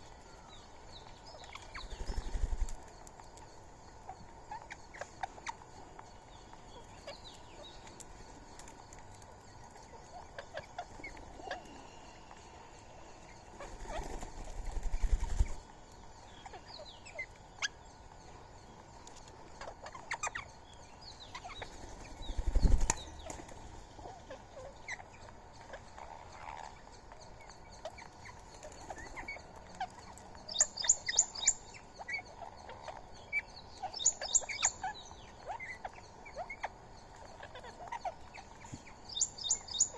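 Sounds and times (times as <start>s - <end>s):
small birds chirping: 0.0s - 39.9s
bird wings flapping: 1.8s - 2.8s, 13.6s - 15.6s, 22.0s - 23.6s
sharp high bird calls: 21.2s - 39.9s.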